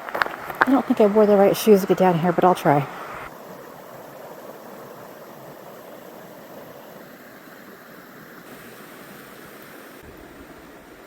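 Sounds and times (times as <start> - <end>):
river water rushing: 0.0 - 11.0.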